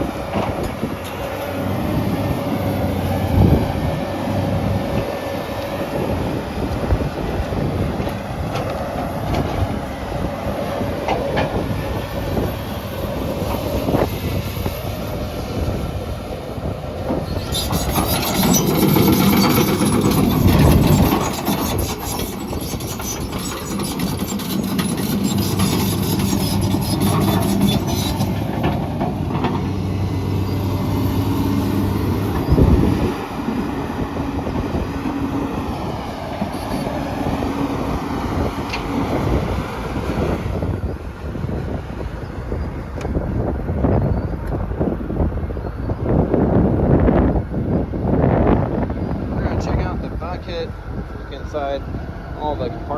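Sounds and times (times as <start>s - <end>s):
excavator diesel engine running: 0.0s - 45.6s
metallic clanking and squealing: 17.1s - 40.3s.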